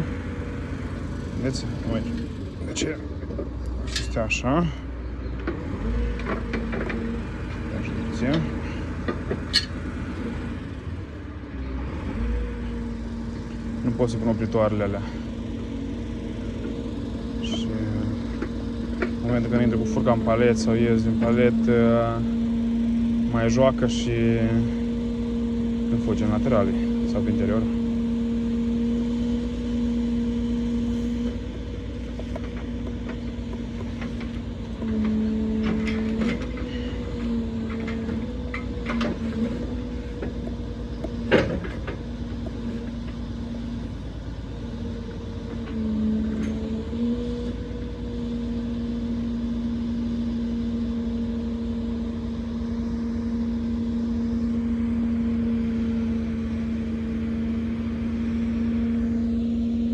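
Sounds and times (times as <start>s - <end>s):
truck engine running: 0.0s - 59.9s
metallic clanks: 3.8s - 4.3s, 9.3s - 9.9s.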